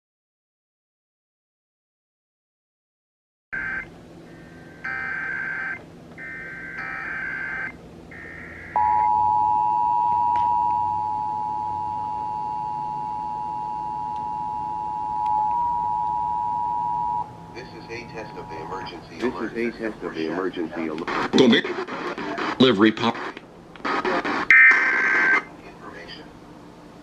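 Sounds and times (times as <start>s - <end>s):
two-tone alert signal: 4.9s - 17.3s.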